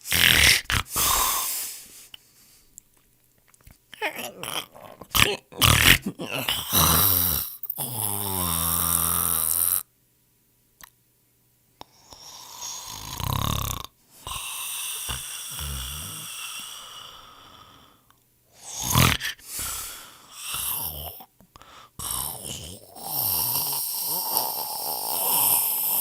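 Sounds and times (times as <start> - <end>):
person snoring: 0.0 - 2.1, 4.0 - 9.9, 11.9 - 26.0
long out-breath: 0.0 - 2.7, 14.2 - 26.0
rasping in-breath: 0.0 - 2.8, 14.2 - 26.0.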